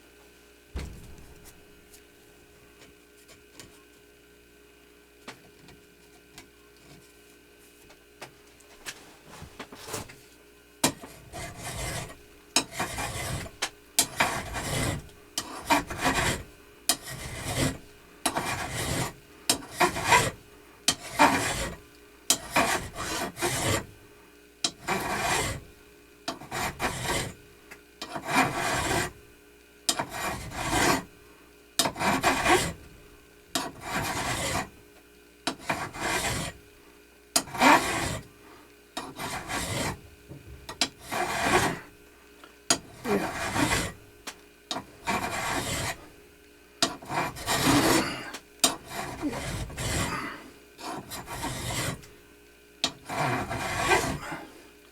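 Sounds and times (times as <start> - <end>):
hand file strokes: 10.8 - 23.9, 24.6 - 25.7, 26.3 - 27.4, 28.0 - 29.2, 29.9 - 31.1, 31.8 - 32.8, 33.6 - 34.7, 35.5 - 36.6, 37.4 - 38.3, 39.0 - 40.0, 40.9 - 41.9, 42.7 - 44.0, 44.7 - 46.1, 46.8 - 52.1, 52.8 - 54.4.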